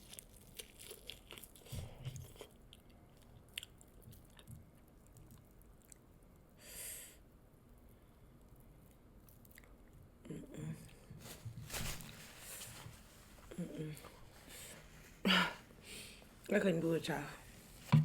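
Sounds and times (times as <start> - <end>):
chewing and mouth clicks: 0.0 - 6.1, 8.8 - 10.0.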